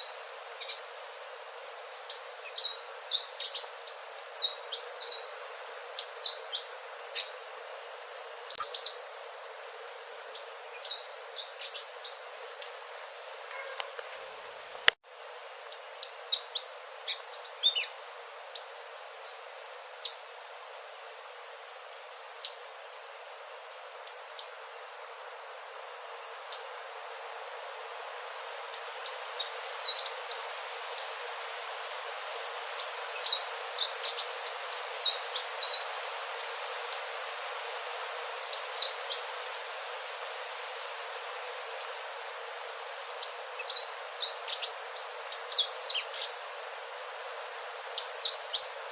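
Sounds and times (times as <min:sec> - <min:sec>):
bird chirping song: 0:00.0 - 0:01.0, 0:01.6 - 0:09.1, 0:09.9 - 0:12.6, 0:15.6 - 0:20.3, 0:24.0 - 0:24.5, 0:32.4 - 0:37.0, 0:42.8 - 0:46.9, 0:47.5 - 0:48.9
steady hiss: 0:00.0 - 0:48.9.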